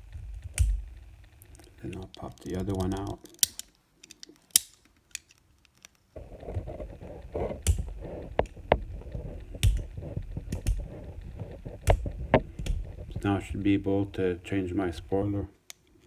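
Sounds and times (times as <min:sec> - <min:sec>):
scraping and handling noise: 0:01.3 - 0:16.0
tool clicking out plastic rivets: 0:02.0 - 0:06.0.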